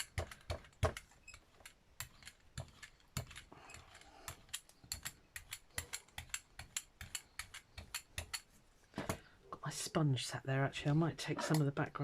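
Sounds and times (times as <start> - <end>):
rubber roller clicking through paint: 0.0 - 8.5.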